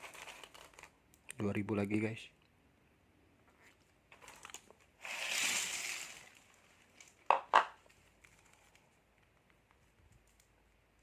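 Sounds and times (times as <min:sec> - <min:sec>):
plastic packet crinkling: 0:00.0 - 0:01.0, 0:04.1 - 0:09.0
plastic packet tearing open: 0:00.0 - 0:01.0, 0:04.2 - 0:07.1.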